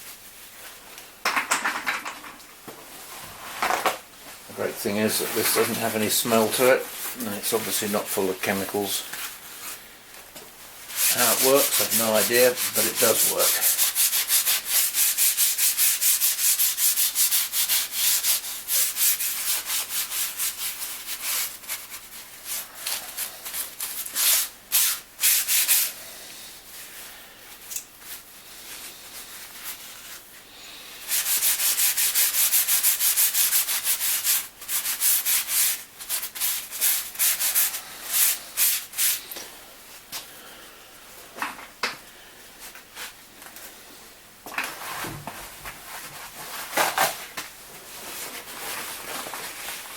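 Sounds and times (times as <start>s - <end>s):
scrubbing on painted metal: 10.9s - 26.0s, 31.0s - 39.4s.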